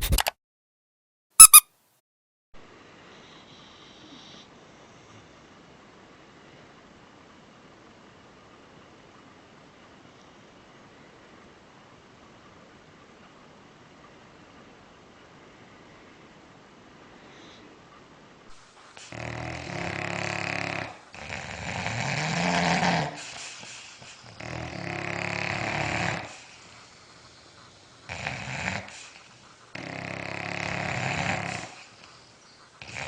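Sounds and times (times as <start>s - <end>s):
dog snoring: 3.1s - 5.4s, 19.0s - 33.0s.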